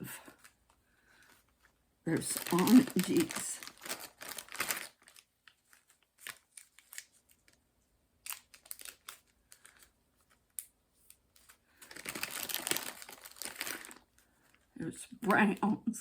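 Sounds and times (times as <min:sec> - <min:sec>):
plastic bags clicking and crinkling: 0:00.0 - 0:07.6, 0:08.2 - 0:15.6
bag rustling: 0:02.1 - 0:05.2, 0:11.8 - 0:14.0.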